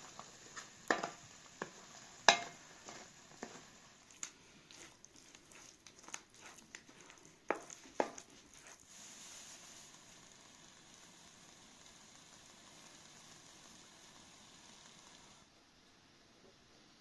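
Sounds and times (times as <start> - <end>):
food sizzling in oil: 0.0 - 15.5
utensil knocking on pan: 0.9 - 3.6.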